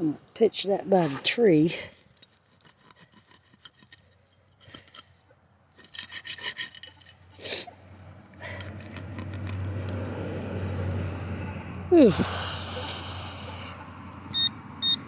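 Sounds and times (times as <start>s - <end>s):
dirt and roots scraping: 0.4s - 7.7s, 8.4s - 11.0s.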